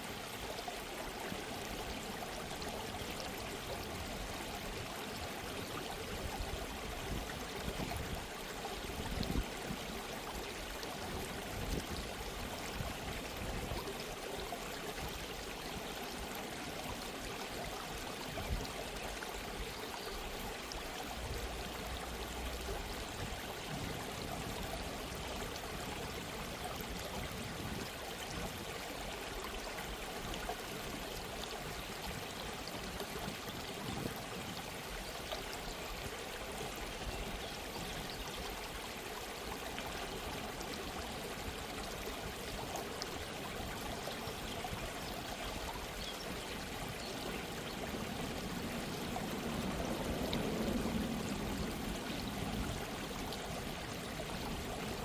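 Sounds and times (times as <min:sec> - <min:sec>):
babbling stream: 0:00.0 - 0:55.0.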